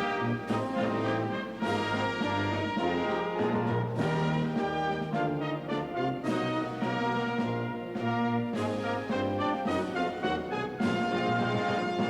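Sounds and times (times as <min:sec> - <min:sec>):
orchestral brass chords: 0:00.0 - 0:12.0.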